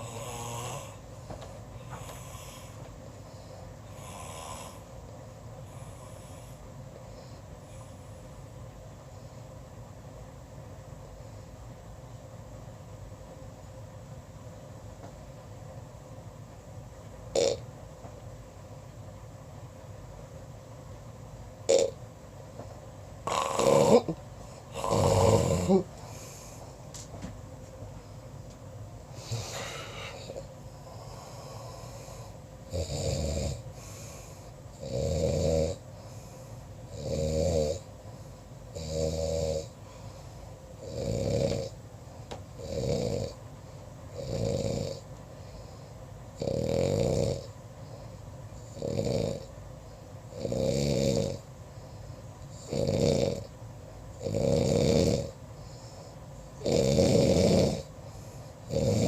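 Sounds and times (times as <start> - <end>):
loud snoring: 0.0 - 1.0, 1.9 - 2.8, 3.9 - 4.9, 17.3 - 17.6, 21.7 - 22.0, 23.2 - 25.9, 29.2 - 34.1, 34.8 - 35.8, 36.9 - 37.9, 38.7 - 39.8, 40.8 - 41.8, 42.6 - 43.4, 44.2 - 45.0, 46.4 - 47.5, 48.7 - 49.5, 50.3 - 51.5, 52.5 - 53.5, 54.2 - 55.4, 56.6 - 57.9, 58.6 - 59.0
quiet breathing: 0.0 - 9.6, 24.3 - 27.1, 27.8 - 34.8, 35.8 - 36.9, 37.8 - 42.6, 45.0 - 46.3, 47.4 - 50.3, 51.3 - 52.7, 55.2 - 59.0.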